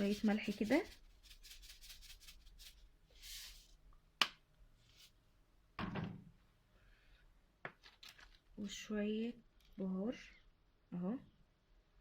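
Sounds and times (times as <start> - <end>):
soft rustle: 0.0 - 3.8, 4.7 - 5.3.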